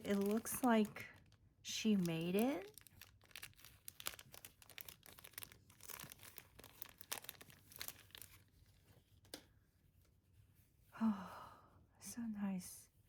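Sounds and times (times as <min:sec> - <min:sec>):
paper packaging crinkling: 0:00.0 - 0:09.0.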